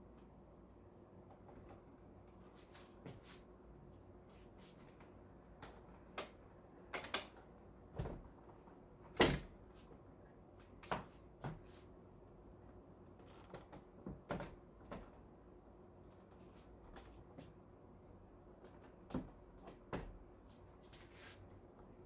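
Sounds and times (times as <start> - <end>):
air conditioner knocks and clunks: 5.5 - 9.8, 10.8 - 11.8, 13.6 - 15.3, 18.6 - 20.4.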